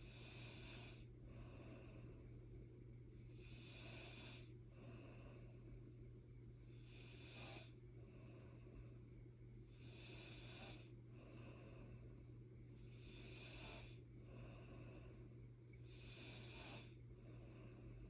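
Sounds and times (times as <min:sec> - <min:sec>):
person snoring: 0:00.0 - 0:02.1, 0:03.4 - 0:04.5, 0:06.7 - 0:07.7, 0:09.7 - 0:11.6, 0:12.9 - 0:15.1, 0:15.9 - 0:17.6
low hum: 0:00.9 - 0:03.5, 0:04.4 - 0:06.9, 0:07.7 - 0:09.8, 0:10.8 - 0:13.1, 0:14.0 - 0:16.0.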